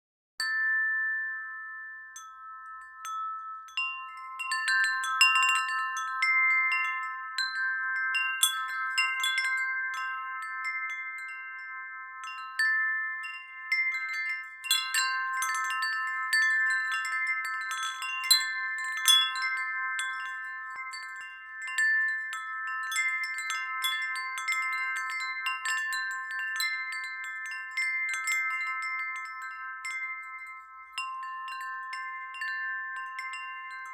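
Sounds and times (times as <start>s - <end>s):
wind chime ringing: 0.4s - 33.9s.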